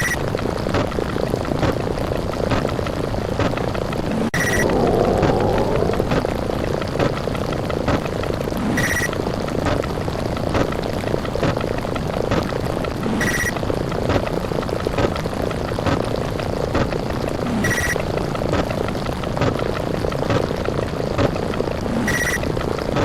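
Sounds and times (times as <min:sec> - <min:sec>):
dense rumbling roar with clicks: 0:03.5 - 0:13.1
explosion effects: 0:04.4 - 0:07.9.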